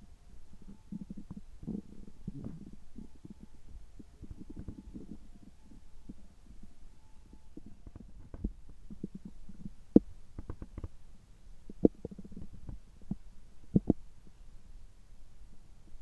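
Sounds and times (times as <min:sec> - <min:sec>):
stomach gurgling: 0:00.5 - 0:06.3, 0:07.5 - 0:11.0, 0:11.6 - 0:14.1.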